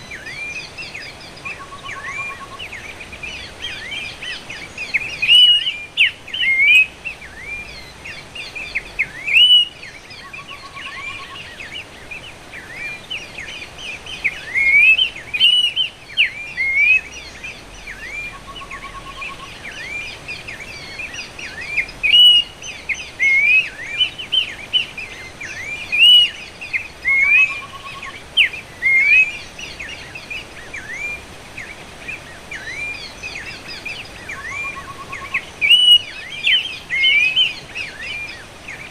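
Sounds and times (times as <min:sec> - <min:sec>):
recorded bird whistles: 0:01.4 - 0:02.9, 0:04.9 - 0:07.7, 0:08.6 - 0:11.6, 0:14.3 - 0:17.1, 0:21.5 - 0:29.9, 0:34.3 - 0:38.4.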